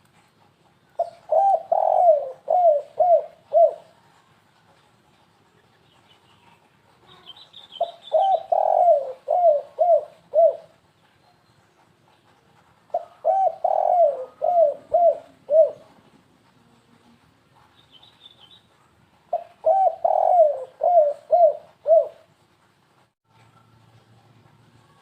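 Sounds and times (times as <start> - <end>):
dove cooing: 1.0 - 4.0, 7.2 - 10.9, 12.9 - 16.1, 19.3 - 22.3
small bird chirping: 5.7 - 8.8, 17.7 - 18.7.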